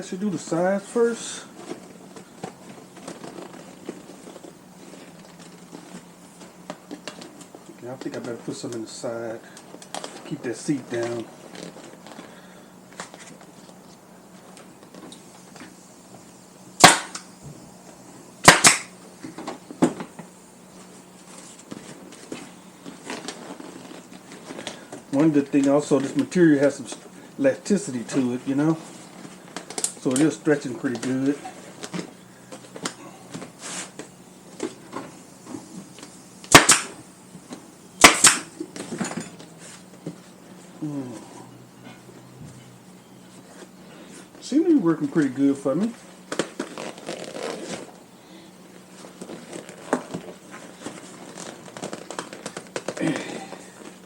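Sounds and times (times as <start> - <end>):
pneumatic nail gun firing: 16.8 - 17.3, 18.4 - 19.0, 36.4 - 37.1, 38.0 - 38.6.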